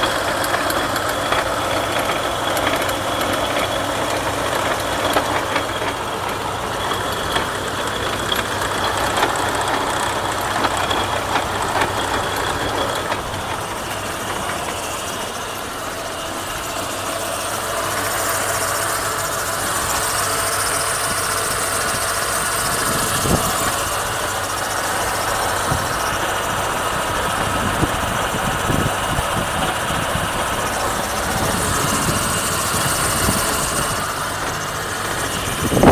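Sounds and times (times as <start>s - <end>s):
vehicle mechanical drone: 0.0s - 35.9s.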